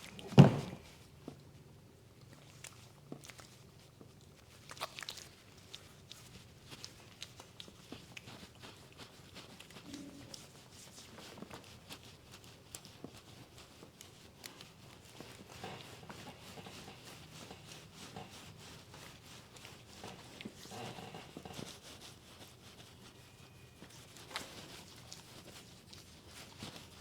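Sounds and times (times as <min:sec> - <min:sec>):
low steady hum: 0:09.8 - 0:10.8.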